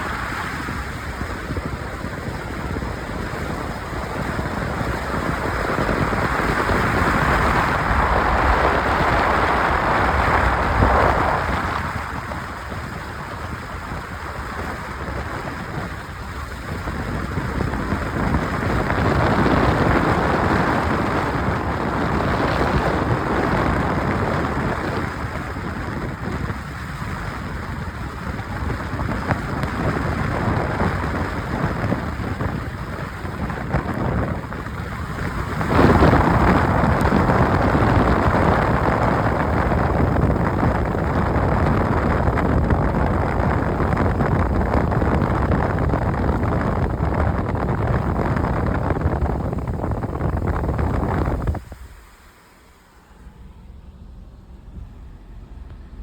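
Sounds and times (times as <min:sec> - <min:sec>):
heavy rain pouring: 0:00.0 - 0:53.4.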